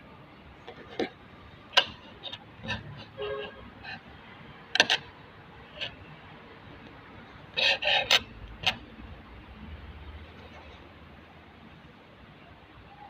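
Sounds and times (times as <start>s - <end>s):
clicks and scraping knocks: 1.8s - 3.2s, 4.8s - 5.1s.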